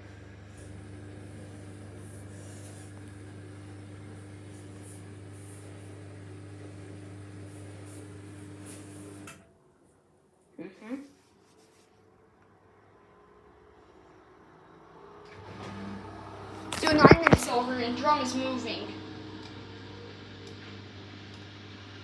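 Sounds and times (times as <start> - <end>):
washing machine spinning: 0.0 - 9.5, 14.8 - 22.0.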